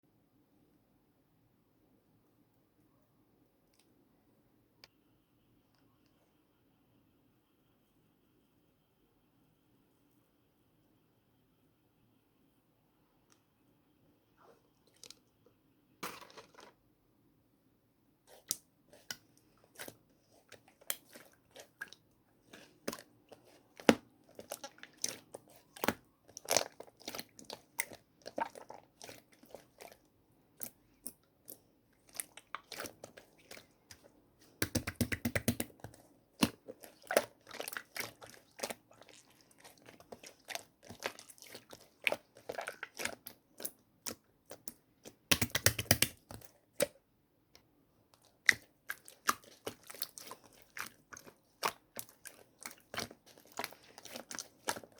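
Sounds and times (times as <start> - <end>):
crunchy slime being squished: 18.3 - 47.0, 48.2 - 54.9.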